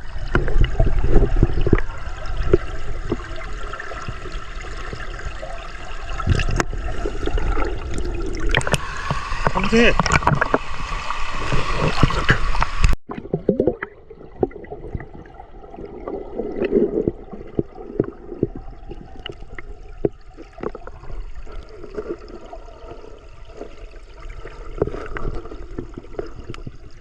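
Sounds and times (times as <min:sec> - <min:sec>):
water gurgling: 0:00.0 - 0:27.0
stream water rushing: 0:07.5 - 0:13.0
small knocks and splashes: 0:08.4 - 0:10.7.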